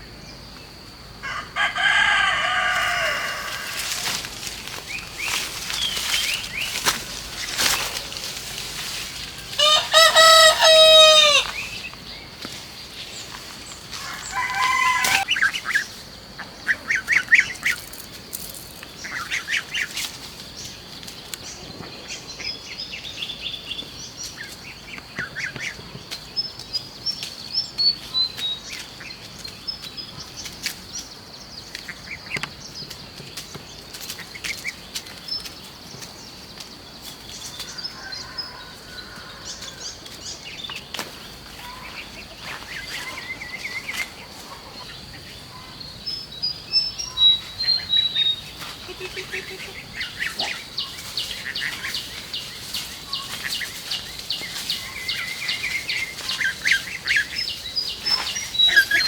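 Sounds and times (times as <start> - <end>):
rooster crowing: 1.2 - 4.4, 9.4 - 11.7, 13.9 - 15.4, 37.7 - 40.0
chickens clucking: 1.3 - 20.1, 37.1 - 59.0.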